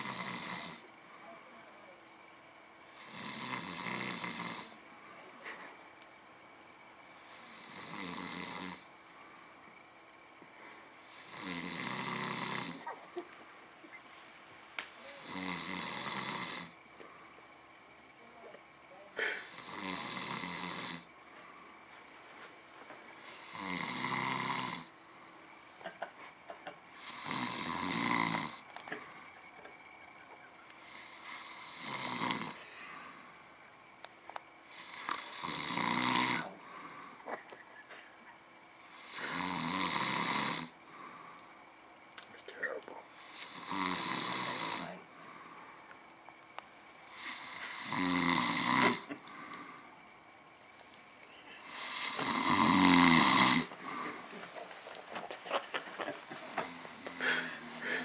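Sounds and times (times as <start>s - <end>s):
man snoring: 0.0s - 1.6s, 2.9s - 4.8s, 7.1s - 9.3s, 11.0s - 12.9s, 14.9s - 16.8s, 19.2s - 21.1s, 23.2s - 25.3s, 26.9s - 29.4s, 30.8s - 33.6s, 34.6s - 37.3s, 38.8s - 41.4s, 43.0s - 45.7s, 47.0s - 50.0s, 51.6s - 54.3s, 56.6s - 58.0s.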